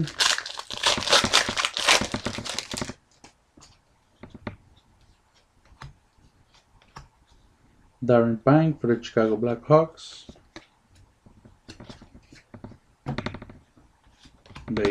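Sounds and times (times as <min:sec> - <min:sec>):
wrapper being torn and crinkled: 0:00.0 - 0:03.0.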